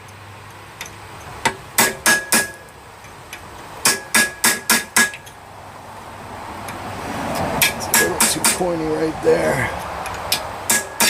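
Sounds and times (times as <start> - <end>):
hammer striking chisel on steel: 0.8 - 2.7, 3.8 - 5.4, 7.6 - 8.8, 10.3 - 11.0.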